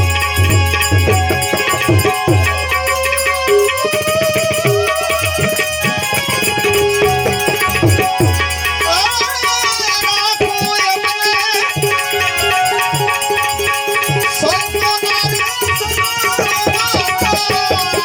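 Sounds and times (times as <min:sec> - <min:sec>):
drum strikes: 0:00.0 - 0:05.4
melody instrument: 0:00.0 - 0:18.0.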